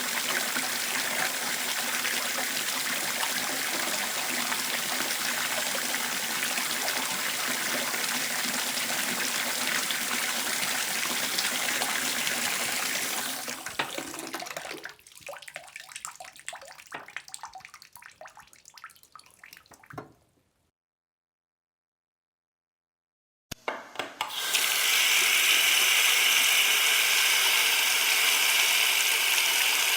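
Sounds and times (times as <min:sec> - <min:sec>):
water running from tap: 0:00.0 - 0:20.0, 0:24.3 - 0:29.9
water dripping: 0:00.0 - 0:20.3.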